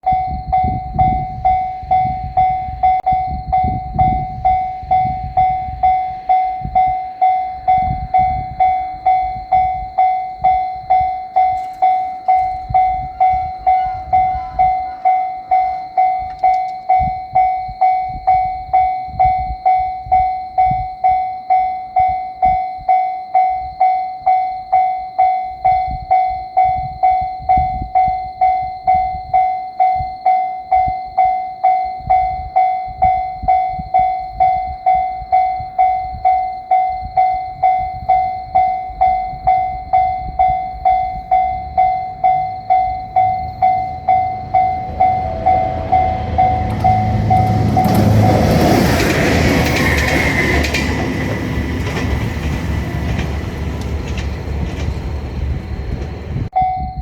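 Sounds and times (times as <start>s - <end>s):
level crossing warning bell ringing: 0.0s - 57.0s
low rumble: 39.3s - 57.0s.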